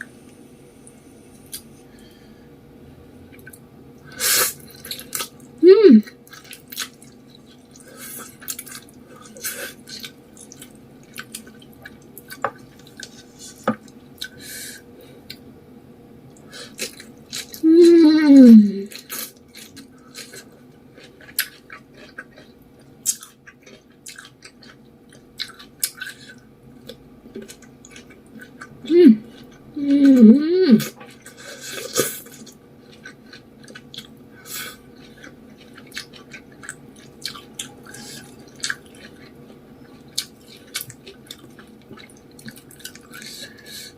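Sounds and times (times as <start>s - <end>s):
person humming mmm: 5.6s - 6.1s, 17.6s - 19.1s, 28.8s - 31.0s
wet chewing and smacking: 6.2s - 14.4s, 19.0s - 29.7s, 30.9s - 43.4s.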